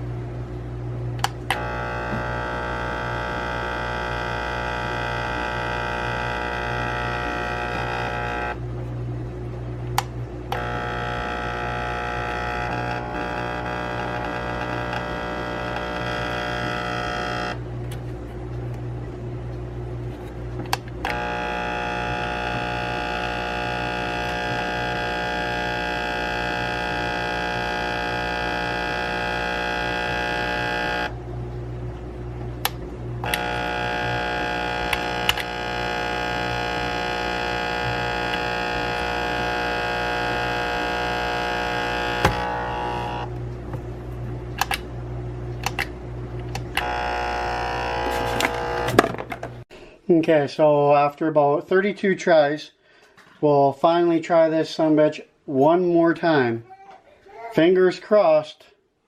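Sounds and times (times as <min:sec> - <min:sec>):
coffee grinder motor humming: 0:01.2 - 0:08.8, 0:09.8 - 0:18.8, 0:19.9 - 0:49.6.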